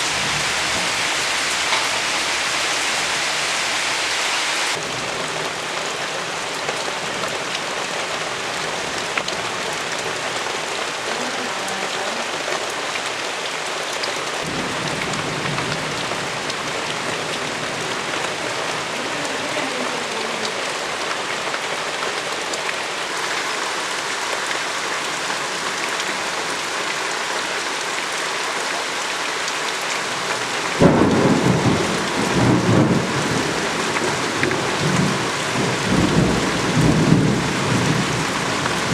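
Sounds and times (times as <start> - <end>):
heavy rain falling: 0.0 - 38.9
loud thunderclap: 30.8 - 38.9.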